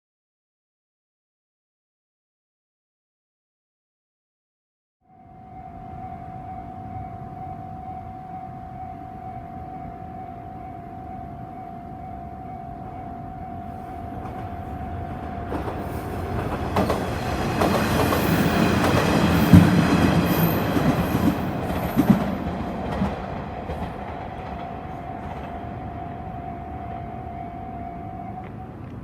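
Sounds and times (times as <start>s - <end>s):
crossing warning bell: 5.1s - 29.0s
diesel train passing: 5.1s - 29.0s
wheels clacking over rail joints: 14.2s - 27.3s.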